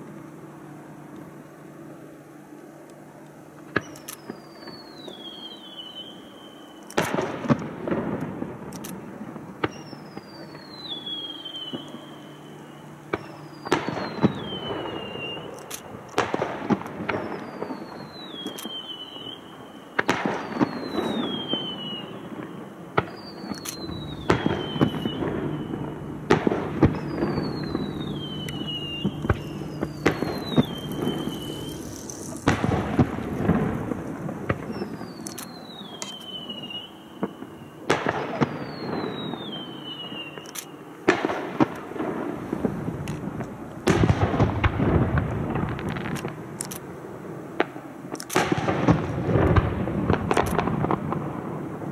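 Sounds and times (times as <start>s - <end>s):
fireworks bangs with crackling: 3.6s - 51.9s
high falling whistle: 23.1s - 26.1s, 26.8s - 32.8s.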